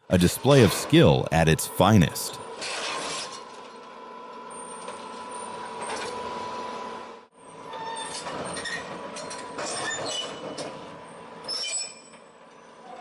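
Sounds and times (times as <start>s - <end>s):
excavator tracks squealing and grinding: 9.6s - 10.7s.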